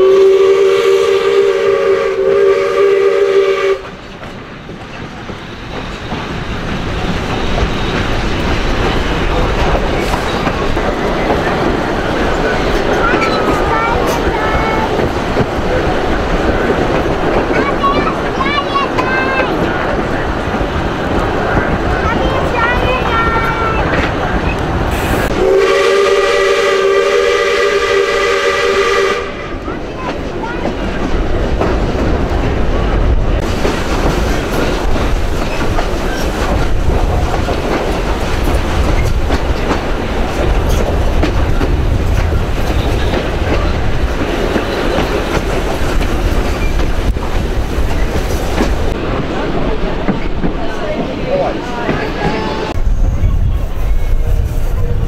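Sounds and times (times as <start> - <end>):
steam locomotive chime whistle: 0.0 - 3.9, 25.4 - 29.5
train running and rail noise: 0.0 - 55.0
steam hiss: 24.8 - 29.6.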